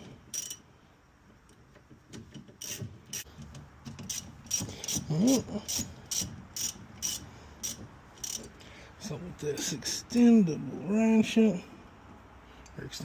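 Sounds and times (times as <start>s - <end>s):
ratchet wrench clicking: 0.3s - 0.6s, 2.6s - 3.3s, 4.0s - 5.1s, 5.7s - 8.6s.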